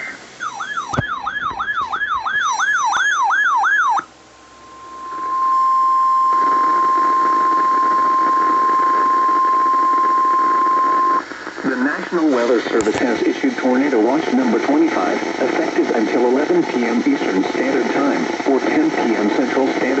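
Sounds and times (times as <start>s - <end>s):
radio static: 0.0s - 2.2s, 4.6s - 20.0s
steady alarm tone: 0.0s - 11.2s
warbling siren-like alert tone: 0.0s - 11.2s.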